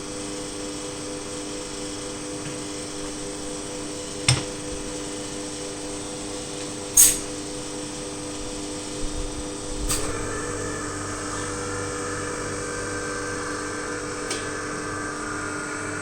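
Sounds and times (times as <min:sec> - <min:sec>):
machine humming: 0:08.4 - 0:16.0.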